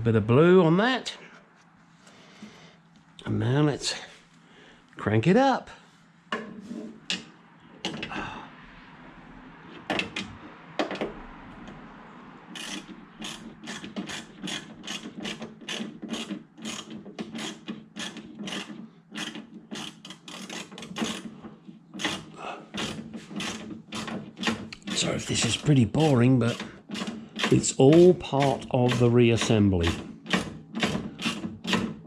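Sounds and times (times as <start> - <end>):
ratchet wrench clicking: 12.6 - 21.2.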